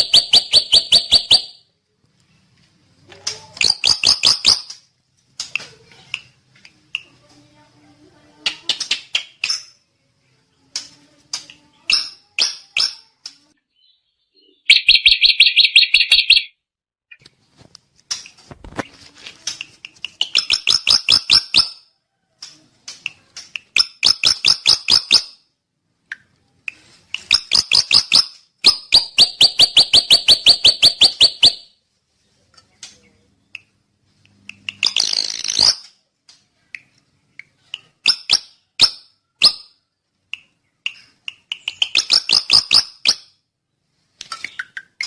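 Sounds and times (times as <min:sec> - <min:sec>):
bird rapid chattering calls: 0:00.0 - 0:01.5, 0:03.6 - 0:04.7, 0:14.4 - 0:16.5, 0:27.2 - 0:31.6, 0:40.9 - 0:43.2.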